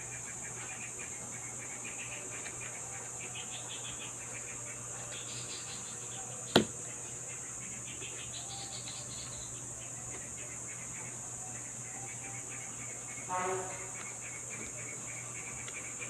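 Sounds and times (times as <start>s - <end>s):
faint chirping: 0.0s - 16.0s
steady high hiss: 0.0s - 16.0s.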